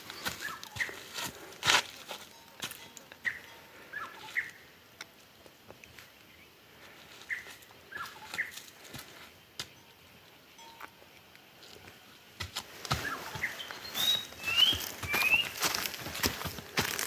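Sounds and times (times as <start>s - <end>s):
short bird calls: 13.0s - 15.6s.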